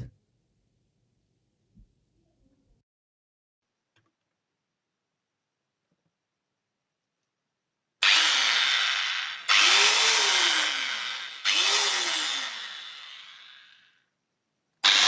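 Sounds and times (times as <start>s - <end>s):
angle grinder motor whining: 8.0s - 13.9s.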